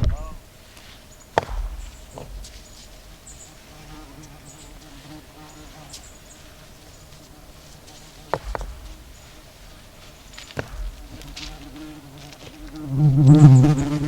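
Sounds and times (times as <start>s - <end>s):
flying insect buzzing: 0.0s - 14.0s
sharp knocks: 1.3s - 4.9s, 8.0s - 12.8s.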